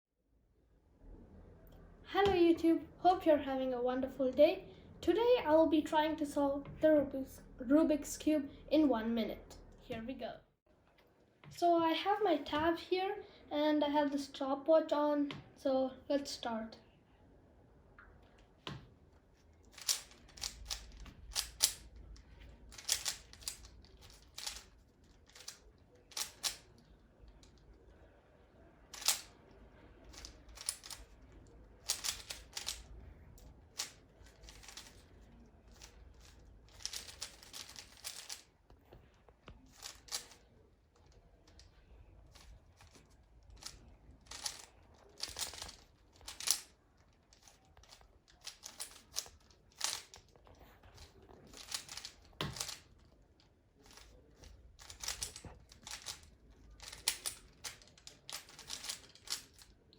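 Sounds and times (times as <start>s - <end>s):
plastic puzzle cube clicking: 19.6s - 27.6s, 28.9s - 38.5s, 39.5s - 41.7s, 42.3s - 53.2s, 53.8s - 59.8s.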